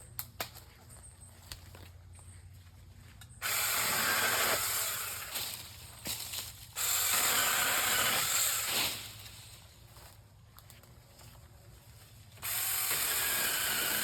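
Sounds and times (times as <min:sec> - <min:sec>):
mini chainsaw cutting branch: 0:03.4 - 0:09.6, 0:12.4 - 0:14.0.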